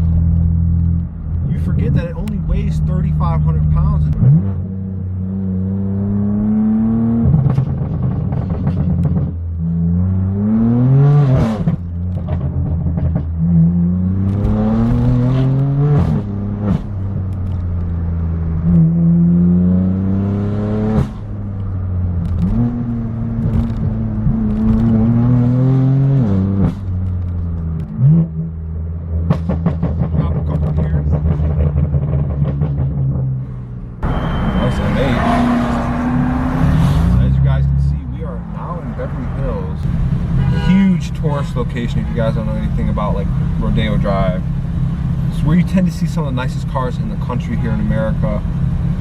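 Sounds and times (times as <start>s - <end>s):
car engine accelerating through gears: 0.0s - 40.4s
exhaust cracks: 20.9s - 25.2s.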